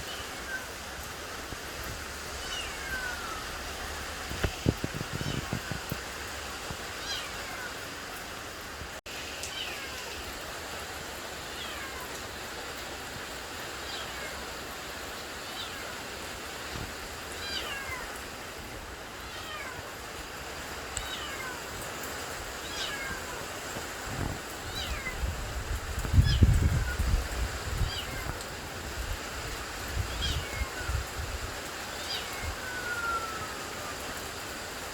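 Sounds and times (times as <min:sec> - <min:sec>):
animal high falling call: 0:32.1 - 0:34.1.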